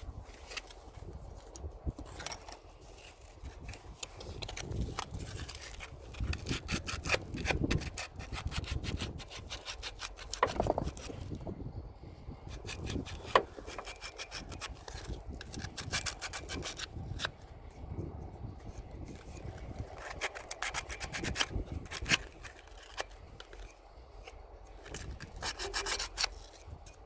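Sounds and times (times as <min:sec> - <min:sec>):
hand sanding metal: 0:20.0 - 0:23.0, 0:24.9 - 0:26.6.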